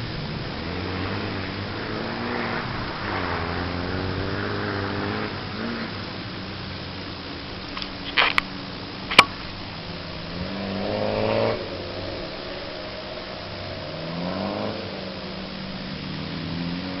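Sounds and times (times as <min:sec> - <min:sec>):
off-road vehicle engine revving: 0:00.0 - 0:17.0
sharp click: 0:09.1 - 0:09.4.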